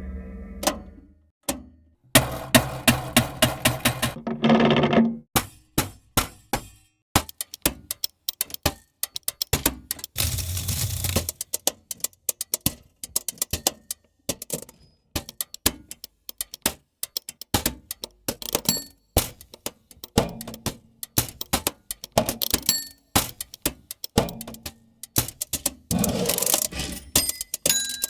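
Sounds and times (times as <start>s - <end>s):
cash register clicks and clunks: 1.4s - 5.2s, 25.5s - 28.0s
cash register rattling: 2.2s - 5.1s, 10.1s - 11.4s, 25.9s - 28.0s.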